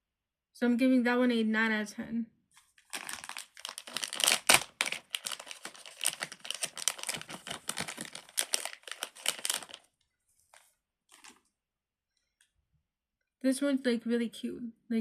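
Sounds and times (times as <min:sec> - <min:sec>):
plastic packaging crinkling: 0:02.6 - 0:11.5.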